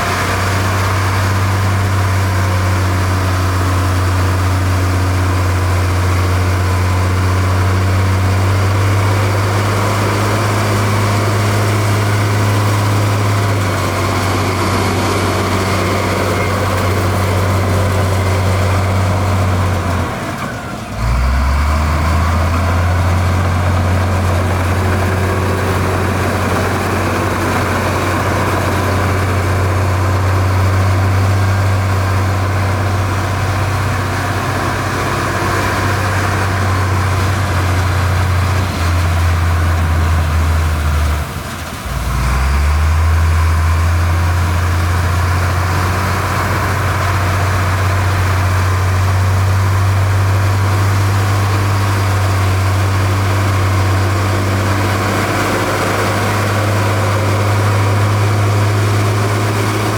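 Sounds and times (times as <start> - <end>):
heavy diesel engine droning: 0.0 - 59.9.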